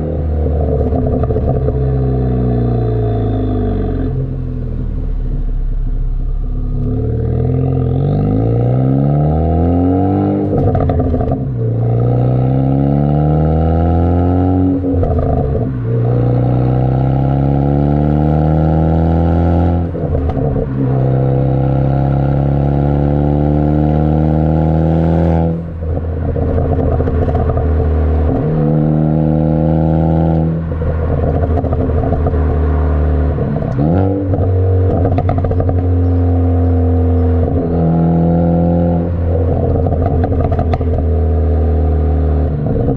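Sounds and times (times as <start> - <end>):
car engine accelerating: 0.0 - 42.9
exhaust crackles: 24.6 - 41.4.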